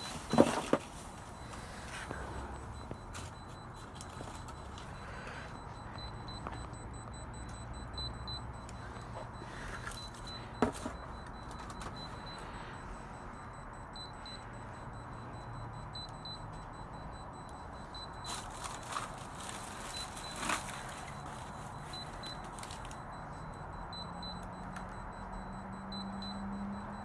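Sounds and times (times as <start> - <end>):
trash rustling: 0.0 - 5.4, 9.6 - 12.1, 18.2 - 23.0.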